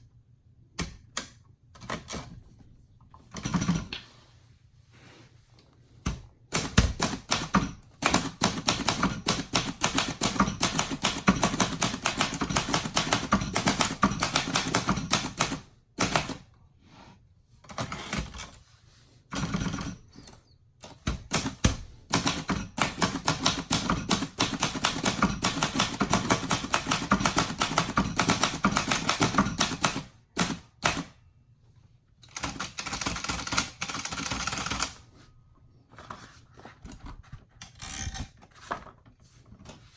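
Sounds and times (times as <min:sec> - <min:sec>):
typewriter keystrokes clacking: 0:06.1 - 0:16.4, 0:20.8 - 0:31.1, 0:32.2 - 0:35.0.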